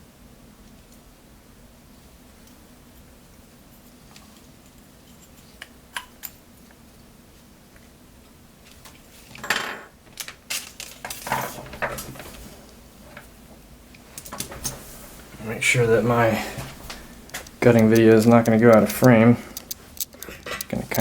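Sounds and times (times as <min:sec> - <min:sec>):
metal parts clinking and clattering: 0:17.3 - 0:21.0.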